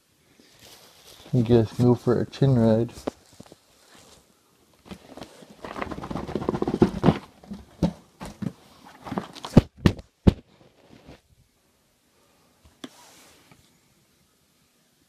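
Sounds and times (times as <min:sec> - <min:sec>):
cardboard scraping and rustling: 0:03.0 - 0:11.2.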